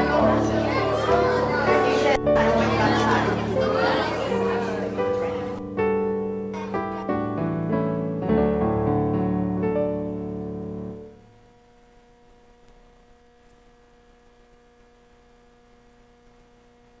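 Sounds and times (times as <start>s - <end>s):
piano playing sustained chords: 0.0s - 11.3s
faint electrical hum: 0.0s - 17.0s.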